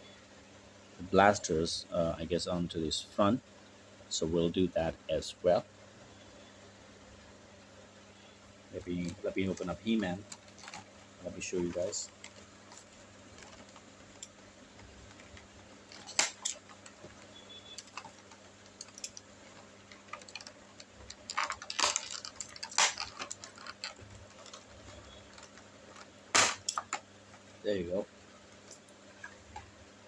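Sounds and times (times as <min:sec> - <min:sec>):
cardboard and plastic crackling: 0:08.8 - 0:27.5.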